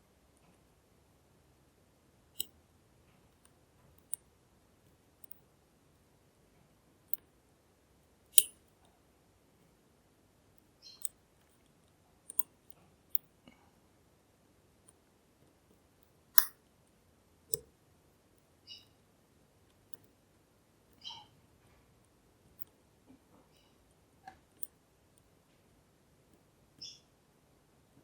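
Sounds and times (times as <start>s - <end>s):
lock pick clicks: 8.4s - 8.6s, 12.3s - 12.5s, 16.4s - 16.6s.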